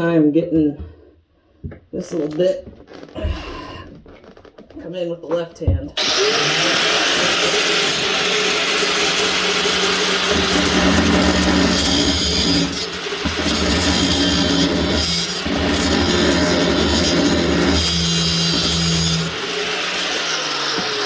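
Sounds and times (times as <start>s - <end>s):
cutoff wheel cutting metal pipe: 6.0s - 21.0s.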